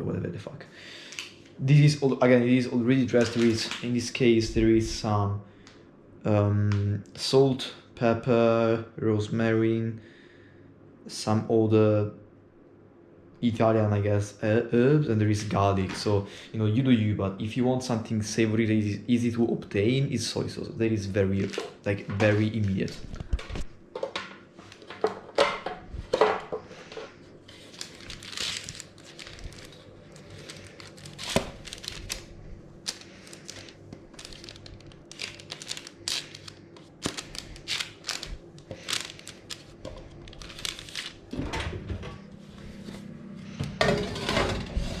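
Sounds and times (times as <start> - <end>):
crinkling: 2.8 - 4.2, 26.1 - 41.4.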